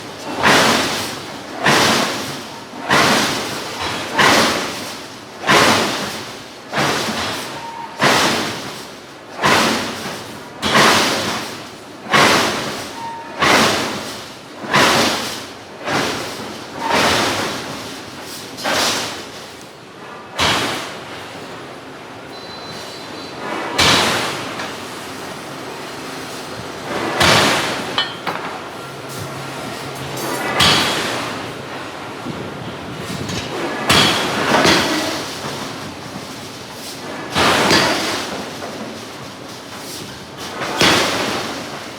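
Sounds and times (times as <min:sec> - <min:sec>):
forging hammer striking steel: 0:26.8 - 0:29.3, 0:30.2 - 0:31.5.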